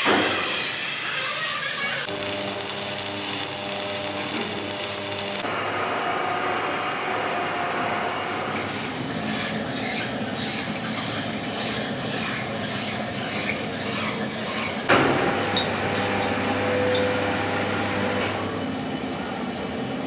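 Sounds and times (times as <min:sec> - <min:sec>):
different steady machine noise: 0:02.0 - 0:06.2
machine hum with high hiss: 0:02.1 - 0:05.5.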